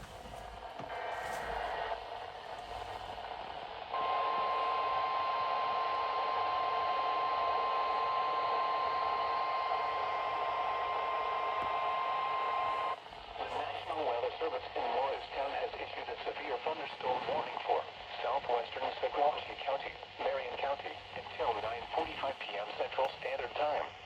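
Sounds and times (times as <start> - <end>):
radio static hiss: 0.0 - 24.0.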